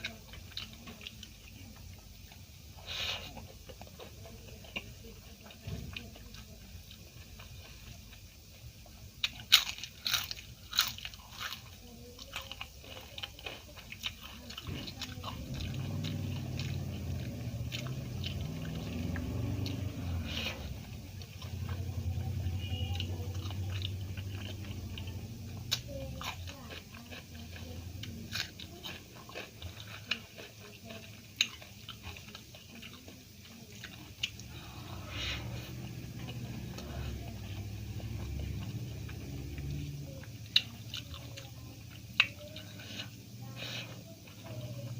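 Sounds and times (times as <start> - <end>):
chewing: 0.0 - 44.9
crunching fried food: 0.0 - 44.9.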